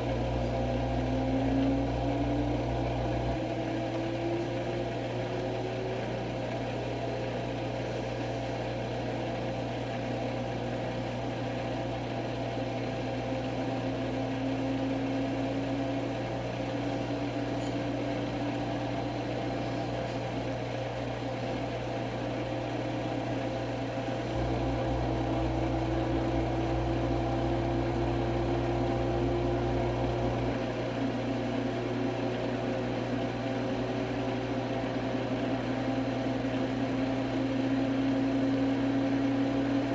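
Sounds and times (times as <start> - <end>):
washing machine spinning: 0.0 - 39.9.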